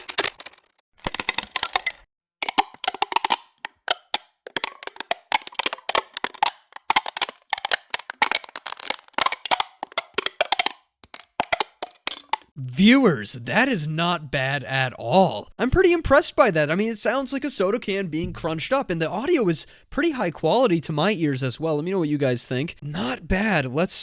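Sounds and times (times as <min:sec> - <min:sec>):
soda can being crumpled: 0:00.0 - 0:12.4.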